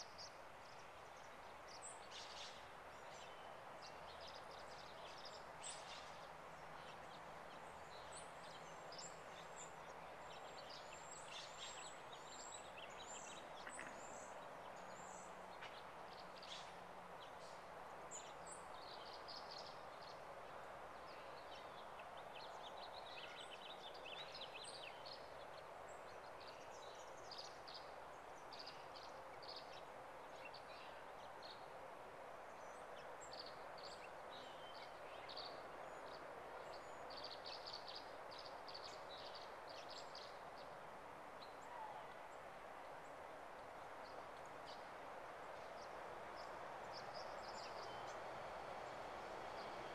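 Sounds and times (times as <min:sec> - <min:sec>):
songbirds chirping: 0:00.0 - 0:49.9
steady background hiss: 0:00.0 - 0:49.9.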